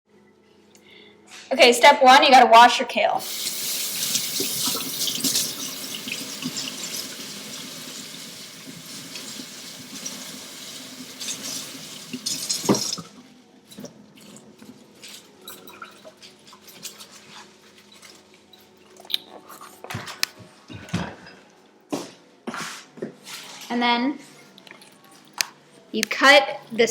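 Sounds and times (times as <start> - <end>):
kitchen tap running: 3.2 - 13.1.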